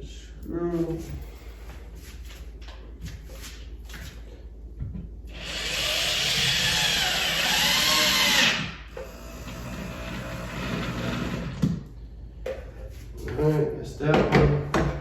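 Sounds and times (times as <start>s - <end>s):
power drill driving a screw: 5.3s - 11.6s.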